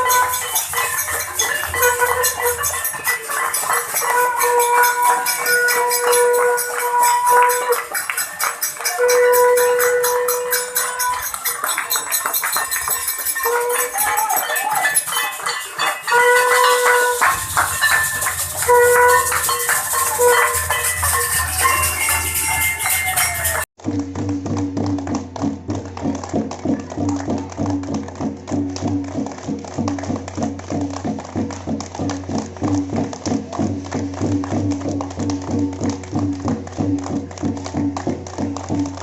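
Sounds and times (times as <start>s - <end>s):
horn-like tone: 0.0s - 11.4s, 13.4s - 14.2s, 16.0s - 23.7s
bells ringing: 0.0s - 23.7s
people clapping: 0.0s - 39.0s.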